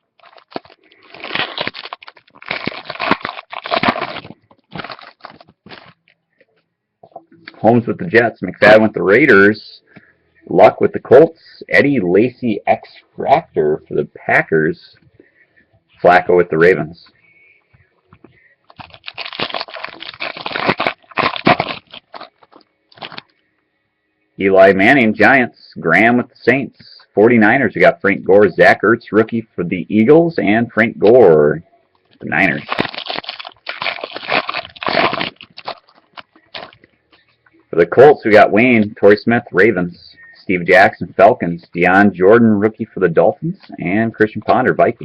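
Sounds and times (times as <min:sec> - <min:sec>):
wrappers and cards crinkling: 0:00.0 - 0:06.2, 0:18.3 - 0:23.4, 0:32.0 - 0:37.4.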